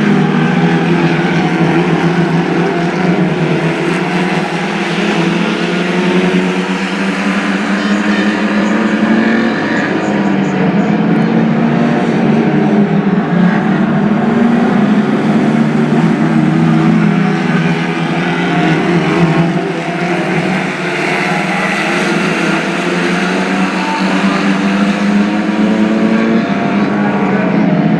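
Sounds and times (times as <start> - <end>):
race car engines droning: 0.0 - 27.9.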